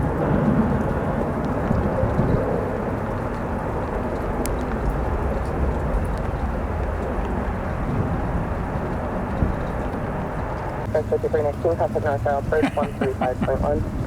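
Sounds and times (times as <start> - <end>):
rain: 0.0 - 14.0
wind buffeting microphone: 0.0 - 14.0.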